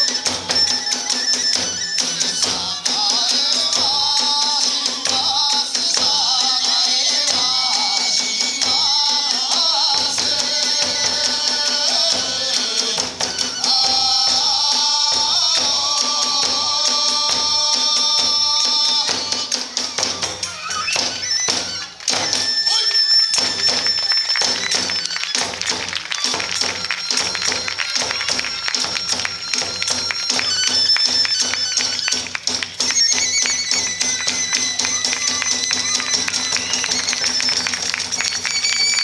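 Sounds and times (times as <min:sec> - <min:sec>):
drum strokes: 0:00.0 - 0:39.0
festival music melody: 0:00.0 - 0:39.0.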